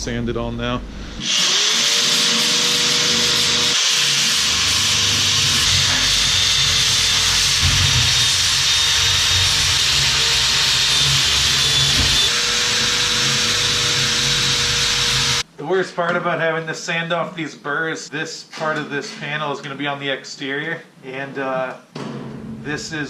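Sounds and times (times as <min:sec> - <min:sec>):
drill motor whine: 0:01.2 - 0:15.4
sanding disc grinding on metal: 0:01.4 - 0:15.4.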